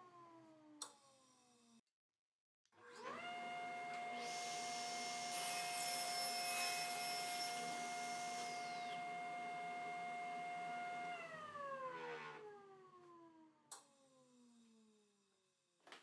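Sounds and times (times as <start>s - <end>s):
dust collector motor whining: 4.0s - 11.4s.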